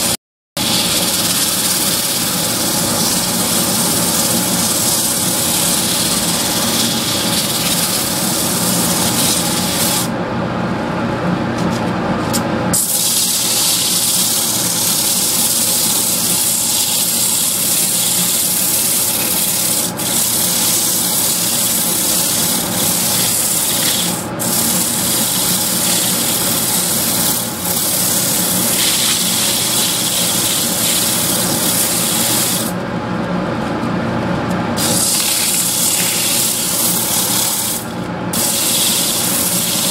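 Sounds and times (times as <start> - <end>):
lathe running: 0.0 - 10.1, 12.8 - 32.8, 34.8 - 39.9
tool scraping hiss: 0.0 - 10.1, 12.8 - 32.8, 34.8 - 39.9.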